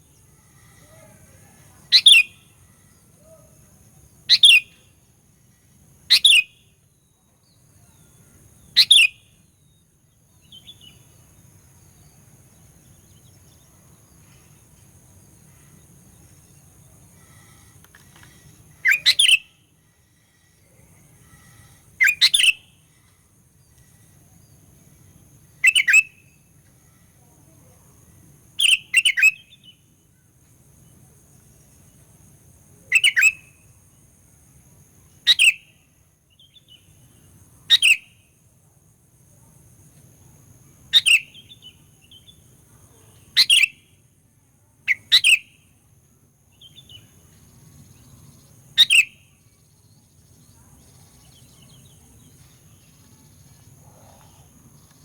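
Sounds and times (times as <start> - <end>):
faint high-pitched drone: 15.4 - 28.2.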